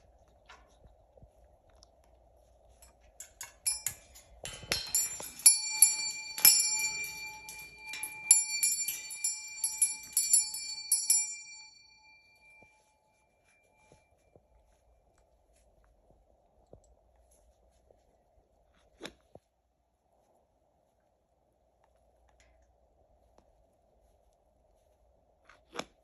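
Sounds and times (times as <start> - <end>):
small metal bell ringing: 2.8 - 14.0.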